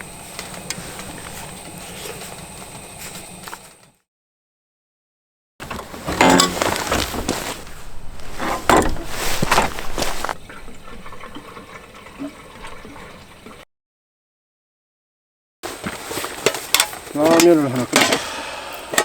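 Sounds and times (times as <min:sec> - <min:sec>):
water pouring into pot: 0:08.0 - 0:13.6.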